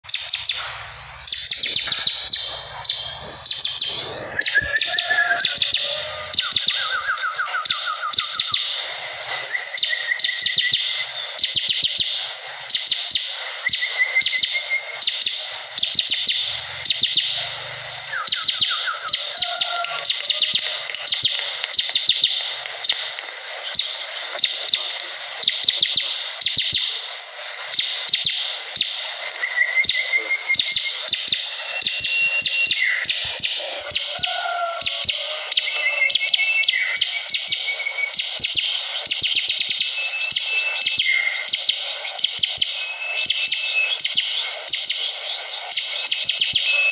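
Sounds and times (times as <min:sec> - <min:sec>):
bird chattering trills: 0:00.1 - 0:08.8, 0:29.9 - 0:37.5.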